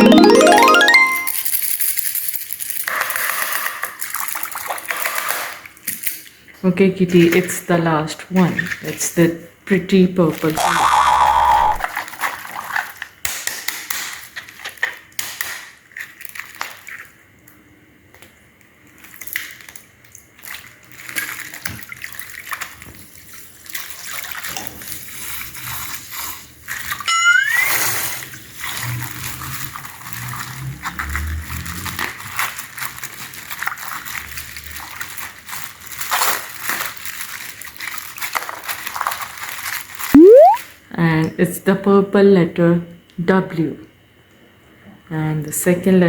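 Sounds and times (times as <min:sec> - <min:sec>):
short rising whistle: 0:27.1 - 0:27.8, 0:40.2 - 0:40.6.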